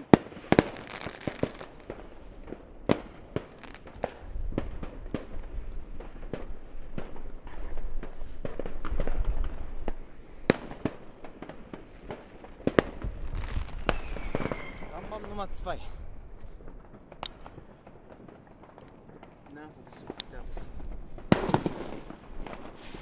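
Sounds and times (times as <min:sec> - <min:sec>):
firecracker and rocket bangs: 0:00.0 - 0:23.0.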